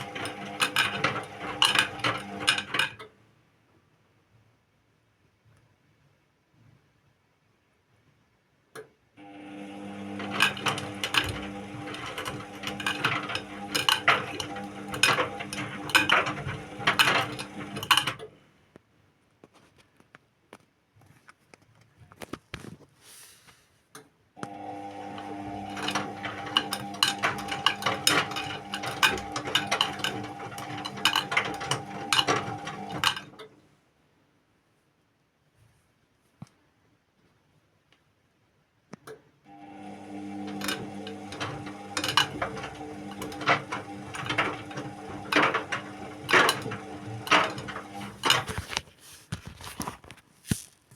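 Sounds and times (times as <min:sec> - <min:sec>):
washing machine motor humming: 0:00.0 - 0:03.0, 0:09.2 - 0:18.3, 0:24.4 - 0:33.4, 0:39.5 - 0:48.8.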